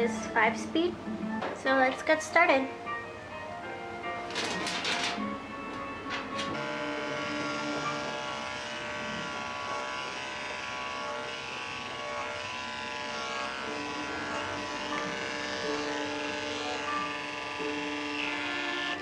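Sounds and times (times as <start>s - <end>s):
background music: 0.0s - 19.0s
electric dog clipper buzzing: 6.2s - 19.0s.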